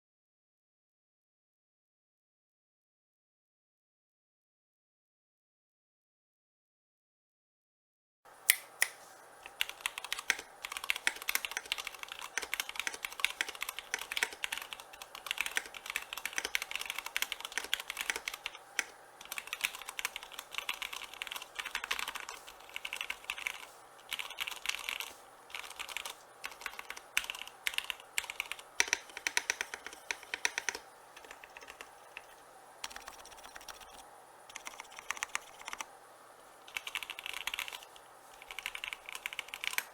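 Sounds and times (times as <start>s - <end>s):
mechanical keyboard typing: 8.5s - 35.9s, 36.7s - 39.9s.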